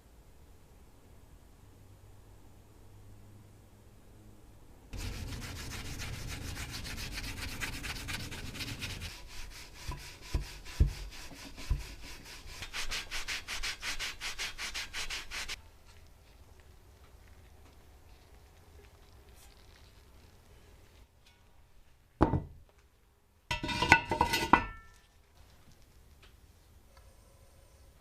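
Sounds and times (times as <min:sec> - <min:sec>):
hand sanding strokes: 0:05.0 - 0:15.6.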